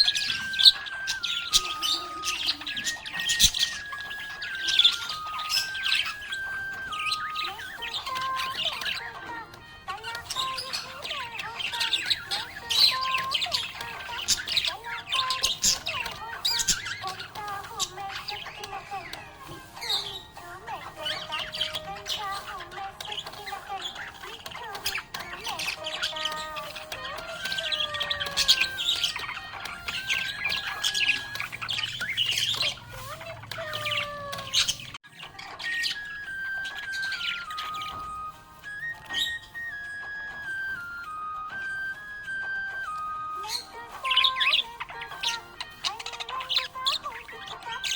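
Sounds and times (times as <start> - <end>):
budgie chirping and warbling: 0.0 - 47.9.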